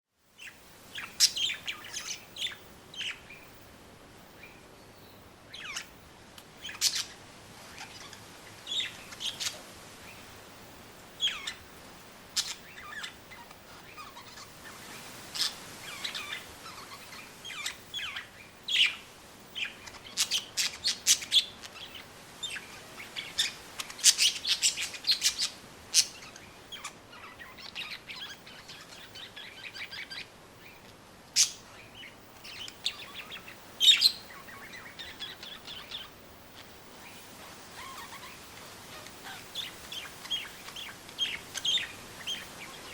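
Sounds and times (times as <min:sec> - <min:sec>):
faint steady hiss: 0:00.1 - 0:42.9
birds chirping and calling: 0:00.4 - 0:03.5, 0:04.4 - 0:06.0, 0:06.6 - 0:10.4, 0:11.2 - 0:11.8, 0:12.4 - 0:42.9.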